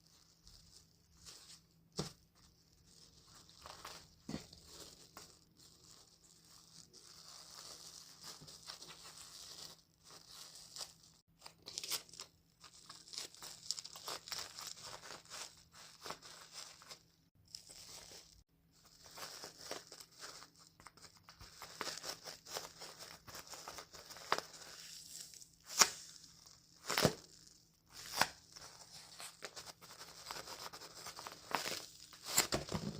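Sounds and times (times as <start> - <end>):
plastic wrap and paper crinkling: 0.0 - 32.9.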